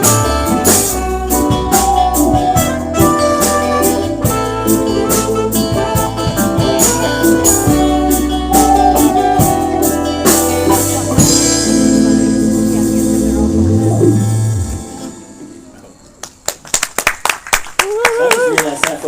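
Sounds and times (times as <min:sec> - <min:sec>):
percussion beat: 0:00.0 - 0:14.9
acoustic band playing: 0:00.0 - 0:16.4.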